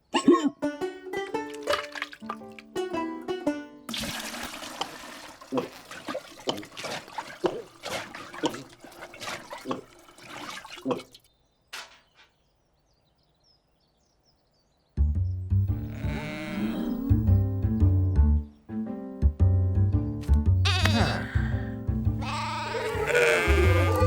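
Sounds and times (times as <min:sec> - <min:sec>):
water gurgling and splashing: 0:01.5 - 0:02.6, 0:03.9 - 0:11.3.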